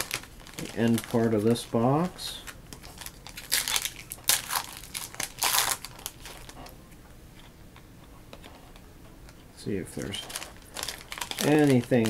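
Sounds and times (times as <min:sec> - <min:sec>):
card pack wrappers tearing: 0:00.0 - 0:06.6, 0:09.9 - 0:12.0
handling of cards: 0:00.0 - 0:06.8, 0:07.4 - 0:12.0.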